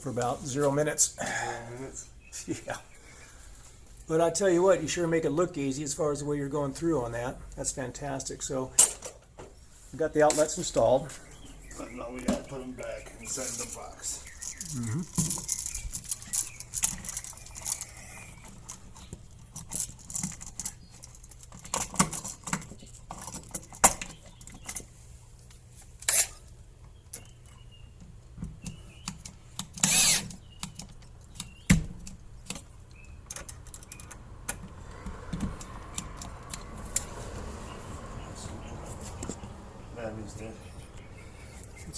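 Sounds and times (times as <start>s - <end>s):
metallic clicks of electrical parts: 8.7s - 9.3s, 14.5s - 37.1s
rasping burst: 29.8s - 30.3s.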